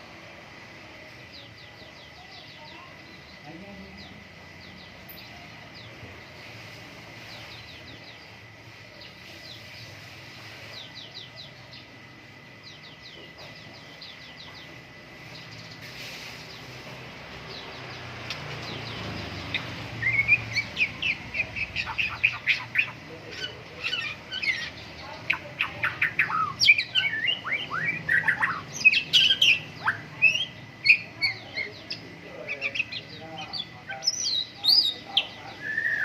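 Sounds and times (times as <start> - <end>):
faint hiss: 6.2 - 11.4, 15.1 - 20.6
bird singing whistles and chirps: 18.7 - 24.8, 25.8 - 32.0, 34.0 - 36.0.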